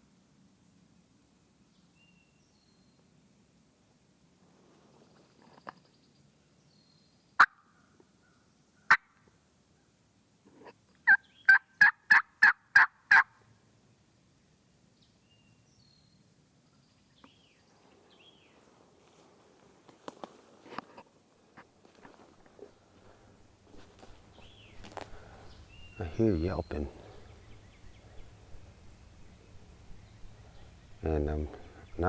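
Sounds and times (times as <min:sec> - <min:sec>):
turkey clucks: 0:11.1 - 0:13.3
turkey yelping: 0:11.1 - 0:13.3.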